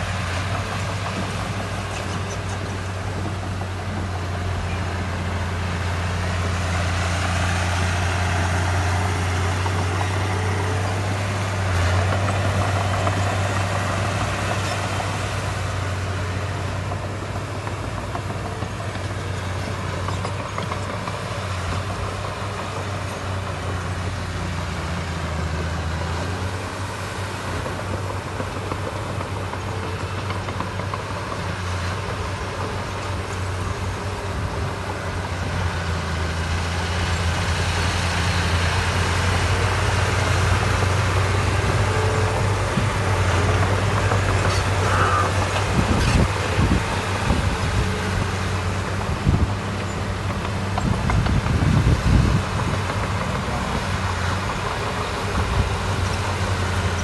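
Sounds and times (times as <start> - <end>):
heavy diesel engine humming: 0.0 - 57.0.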